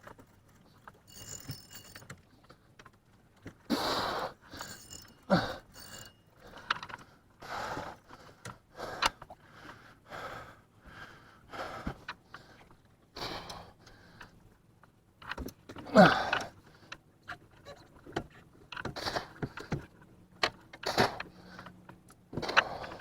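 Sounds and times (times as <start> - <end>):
fishing reel clicks and rattles: 0.9 - 2.2, 4.5 - 6.9
person breathing hard: 7.4 - 14.4.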